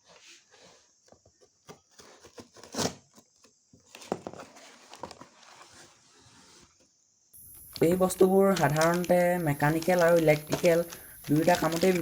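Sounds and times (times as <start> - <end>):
packaging rustling and tearing: 7.4 - 12.0.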